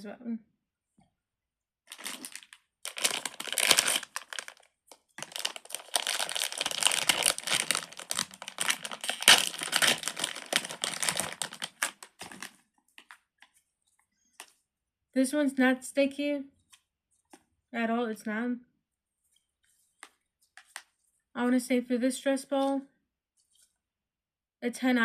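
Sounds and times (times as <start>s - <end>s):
plastic crinkling: 1.9s - 13.5s.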